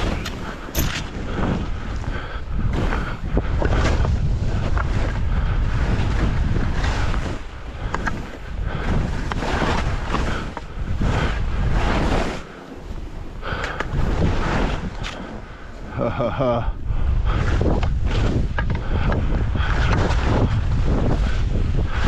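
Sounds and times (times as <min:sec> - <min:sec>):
skis hissing through snow: 0:00.0 - 0:13.3, 0:13.9 - 0:15.9
wind rushing over microphone: 0:00.0 - 0:22.0.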